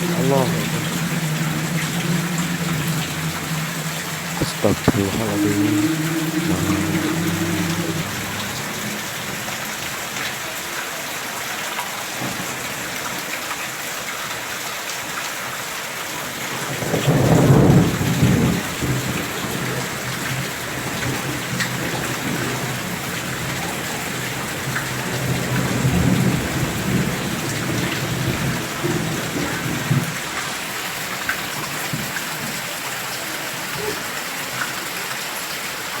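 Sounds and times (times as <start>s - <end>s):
low rumbles in the sky: 0.0s - 8.8s
steady rain falling: 0.0s - 36.0s.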